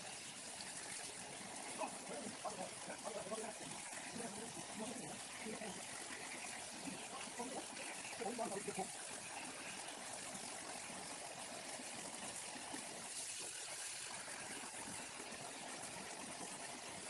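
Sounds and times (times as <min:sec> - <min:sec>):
waterfall splashing: 0:01.6 - 0:10.0.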